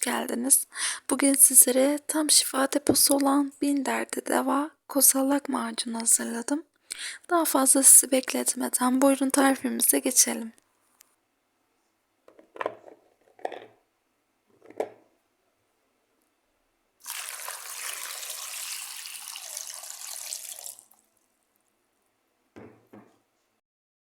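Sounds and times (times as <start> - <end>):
water running: 17.0 - 21.1.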